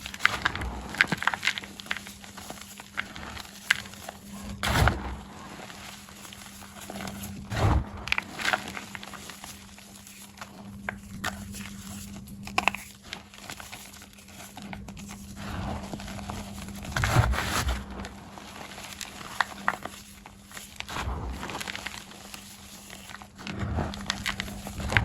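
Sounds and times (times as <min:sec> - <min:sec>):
chalk crunching and crumbling: 0:00.0 - 0:25.0
low electrical hum: 0:00.0 - 0:25.0.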